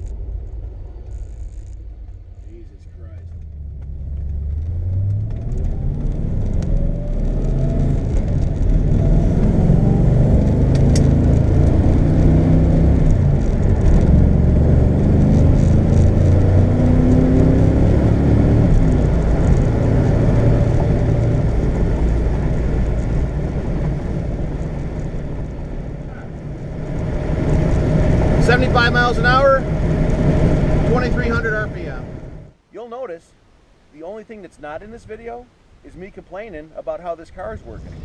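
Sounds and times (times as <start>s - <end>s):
car engine accelerating: 0.0s - 32.6s
road noise: 0.0s - 38.0s.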